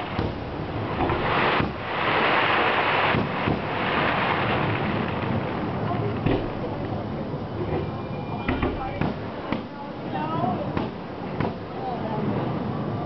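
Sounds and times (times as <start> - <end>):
sharp firework bangs: 0.0 - 6.8
fireworks booming and crackling: 0.0 - 7.4, 8.5 - 9.7.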